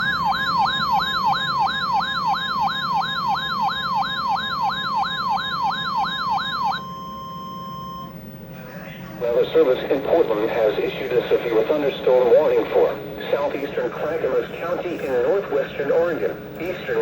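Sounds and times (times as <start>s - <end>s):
weather radio alarm siren: 0.0s - 8.2s.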